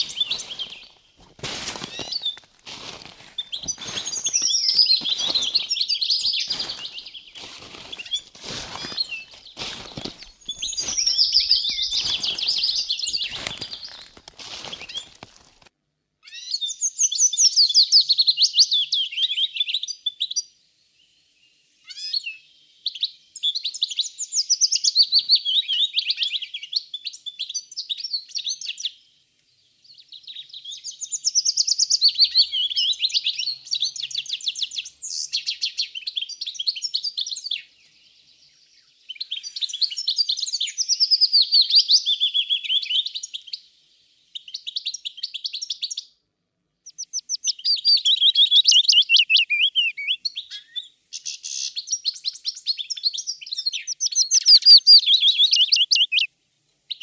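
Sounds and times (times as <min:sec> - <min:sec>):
brief bird calls: 0:00.0 - 0:01.0, 0:01.8 - 0:02.4, 0:03.4 - 0:14.1, 0:47.0 - 0:51.9
songbird singing warbling phrases: 0:00.0 - 0:01.0, 0:03.4 - 0:14.0, 0:29.8 - 0:43.7, 0:46.9 - 0:56.3.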